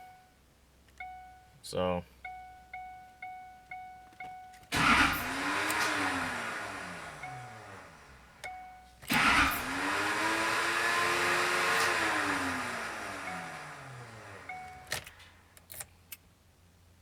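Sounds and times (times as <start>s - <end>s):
diesel engine revving: 4.7s - 8.4s, 9.1s - 14.9s.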